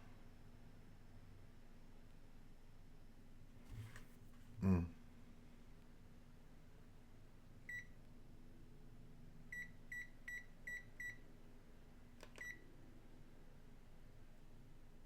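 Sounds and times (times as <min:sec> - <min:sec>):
short high keypress beeps: 0:12.4 - 0:12.6.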